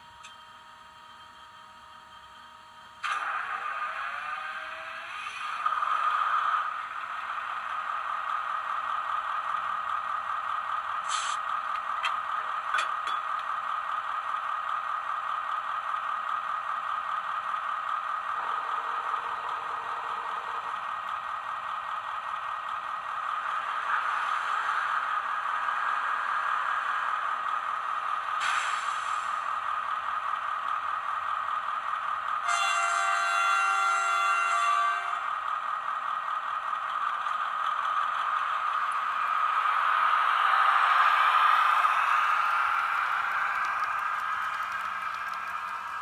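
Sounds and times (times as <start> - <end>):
diesel engine drone from small speaker: 0.0 - 46.0
short hiss: 11.1 - 11.4, 28.4 - 29.2.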